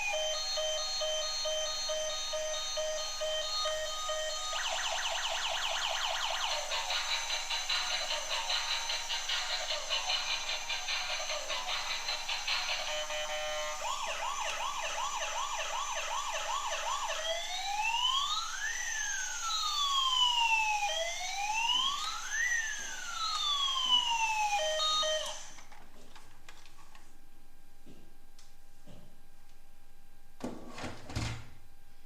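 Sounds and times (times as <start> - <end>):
toy siren yelping and wailing: 0.0 - 25.5.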